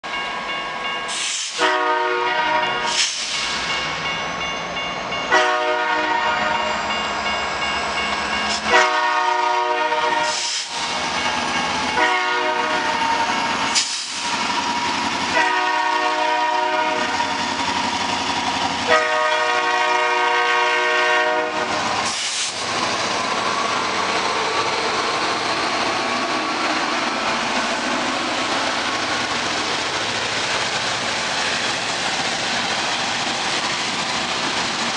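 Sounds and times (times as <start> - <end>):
train rumbling past: 0.0 - 34.9
locomotive air horn blasts: 1.5 - 3.1, 5.3 - 6.6, 8.6 - 10.7, 12.0 - 13.4, 15.3 - 17.4, 18.9 - 21.8.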